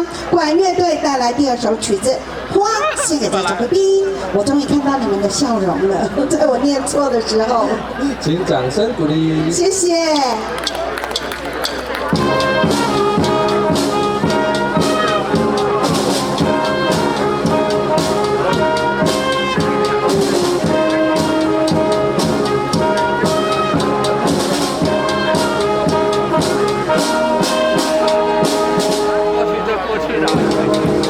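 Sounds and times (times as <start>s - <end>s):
wind band playing: 0.0s - 31.0s
percussion beat: 9.3s - 31.0s
brass melody: 12.0s - 31.0s.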